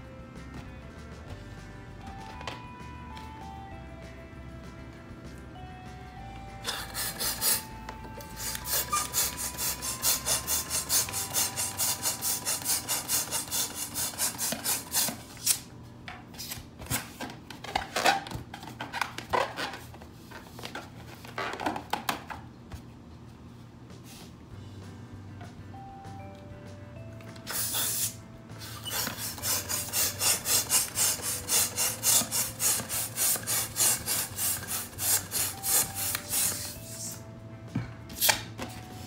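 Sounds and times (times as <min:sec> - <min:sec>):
faint background music: 0:00.0 - 0:39.0
rhythmic rubbing strokes: 0:06.6 - 0:15.6, 0:27.4 - 0:37.3.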